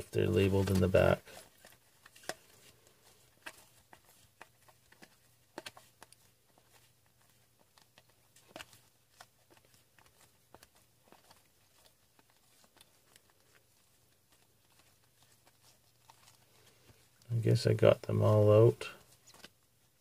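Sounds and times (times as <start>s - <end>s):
trading cards clicking and tapping: 0.0s - 13.8s.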